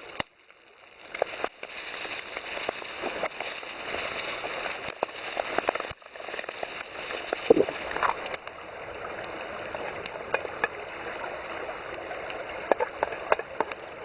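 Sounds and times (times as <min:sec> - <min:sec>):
fire pops: 0:00.0 - 0:08.6
wood fire crackling: 0:00.0 - 0:14.0.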